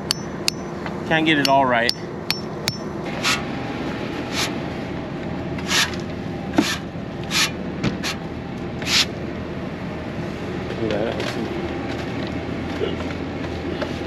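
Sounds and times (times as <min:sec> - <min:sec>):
short scraping strokes: 0:03.1 - 0:03.5, 0:04.2 - 0:04.6, 0:05.6 - 0:06.0, 0:06.6 - 0:08.2, 0:08.8 - 0:09.1.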